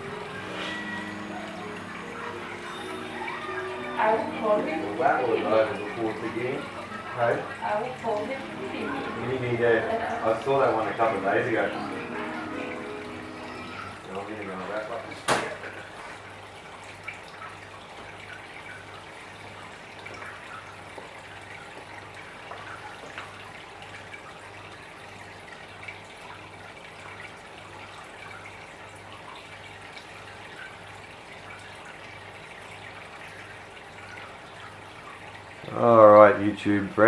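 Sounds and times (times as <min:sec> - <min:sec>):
water trickling and dripping: 0:00.0 - 0:37.0.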